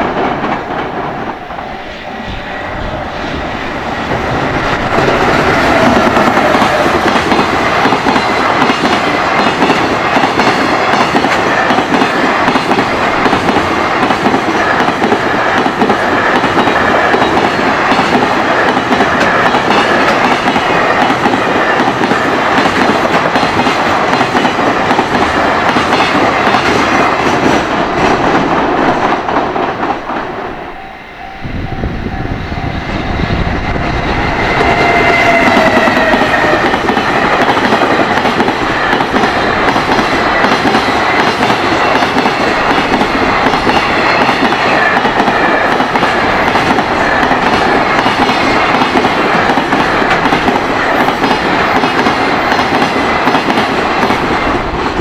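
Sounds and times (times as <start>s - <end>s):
train wheels clattering: 0.0s - 30.9s, 31.6s - 55.0s.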